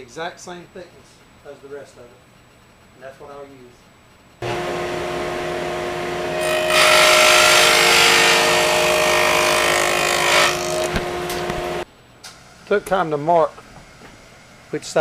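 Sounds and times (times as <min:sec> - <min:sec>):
saw cutting wood: 0:04.4 - 0:11.8
table saw motor humming: 0:04.4 - 0:11.9.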